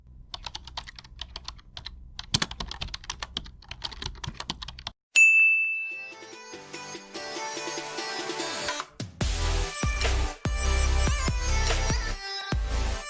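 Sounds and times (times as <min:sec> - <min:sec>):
keyboard typing clicks: 0:00.3 - 0:04.9
bell ding: 0:05.2 - 0:06.4.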